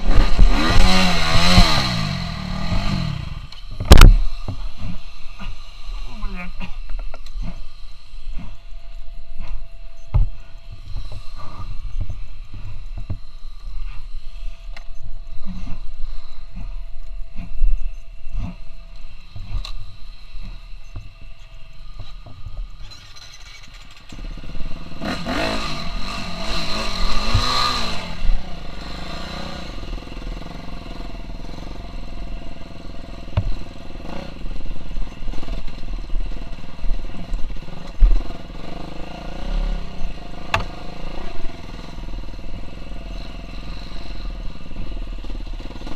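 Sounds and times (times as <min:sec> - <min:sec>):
motocross engine revving: 0:00.0 - 0:06.8, 0:22.8 - 0:45.9.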